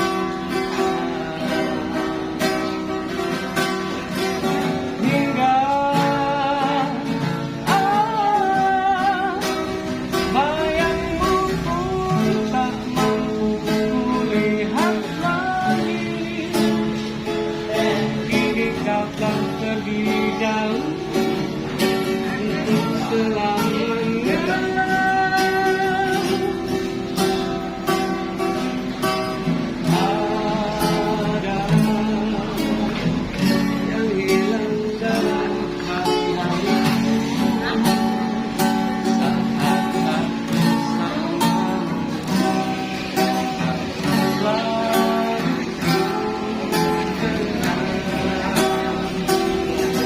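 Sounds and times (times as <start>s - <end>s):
acoustic guitar strumming: 0.0s - 50.0s
person singing: 0.0s - 50.0s.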